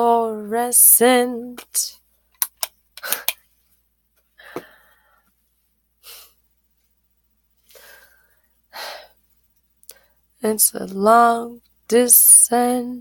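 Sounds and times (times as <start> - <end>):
person breathing: 3.0 - 3.4, 4.4 - 5.4, 7.6 - 9.2.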